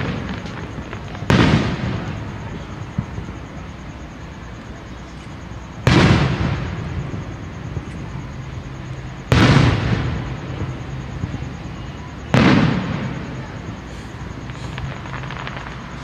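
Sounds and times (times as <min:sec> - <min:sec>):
background rumble of fireworks: 0:00.0 - 0:16.0
fireworks booms with rumbling echo: 0:00.0 - 0:16.0.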